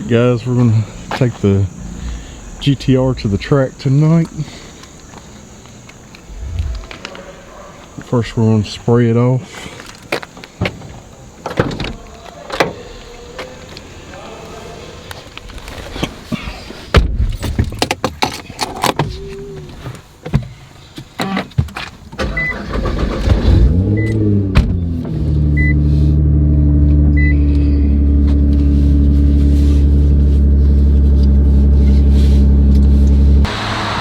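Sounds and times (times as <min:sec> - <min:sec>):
car engine idling: 0:00.0 - 0:07.9
car engine starting and revving: 0:06.3 - 0:07.0, 0:22.2 - 0:34.0.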